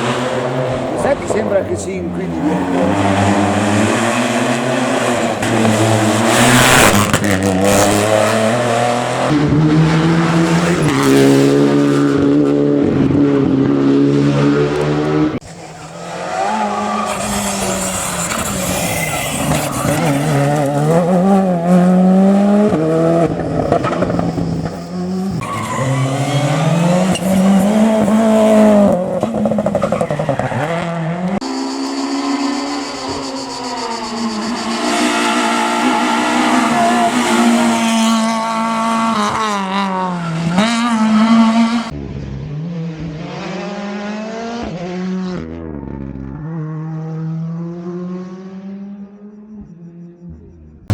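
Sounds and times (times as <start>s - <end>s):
rally car engines revving: 0.0s - 50.9s
tyre squeal: 15.6s - 21.1s, 24.3s - 28.1s, 31.4s - 38.2s.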